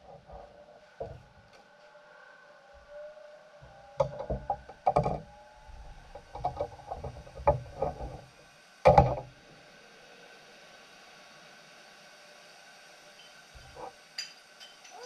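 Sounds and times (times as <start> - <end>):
objects knocking and clunking: 4.0 - 5.3.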